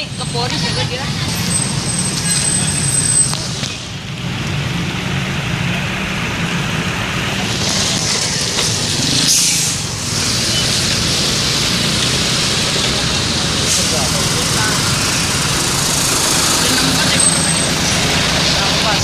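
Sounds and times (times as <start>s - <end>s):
bus engine running: 0.0s - 19.0s
roadway noise: 0.0s - 19.0s
air brakes hissing: 9.1s - 9.9s, 13.6s - 14.1s.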